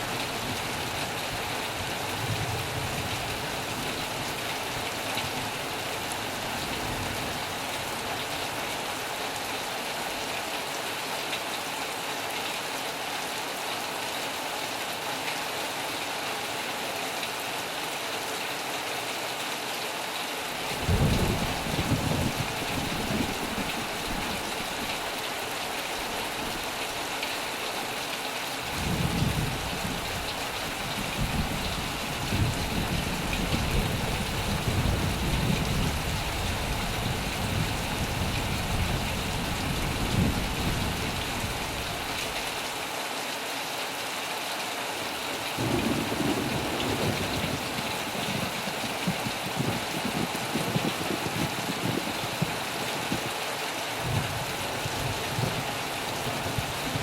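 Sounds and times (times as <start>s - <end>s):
heavy rain on a metal roof: 0.0s - 57.0s
thunder rumbling: 20.8s - 24.9s, 28.7s - 42.0s, 45.5s - 53.3s.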